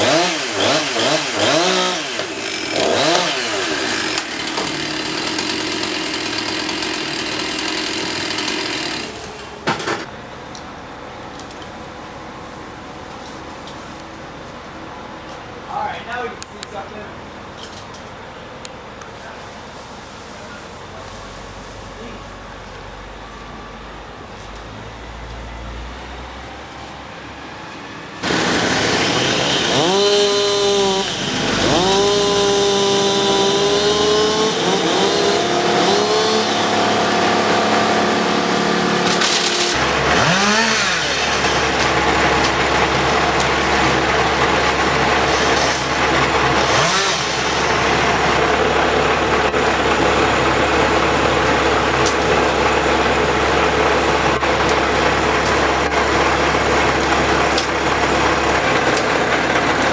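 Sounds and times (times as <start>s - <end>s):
chainsaw cutting wood: 0.0s - 10.0s, 28.2s - 59.9s
machinery engine hum: 36.5s - 59.9s.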